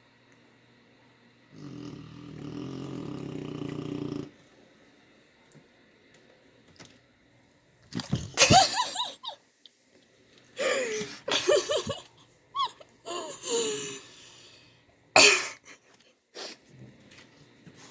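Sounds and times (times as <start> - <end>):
stifled human laughter: 8.4 - 9.4, 10.6 - 14.0.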